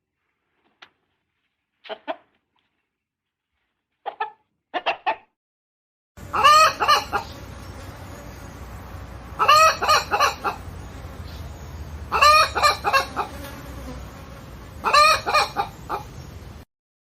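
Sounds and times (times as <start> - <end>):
chicken calling: 1.8 - 2.4, 6.2 - 7.8, 9.3 - 11.5, 12.1 - 13.5, 14.8 - 16.3.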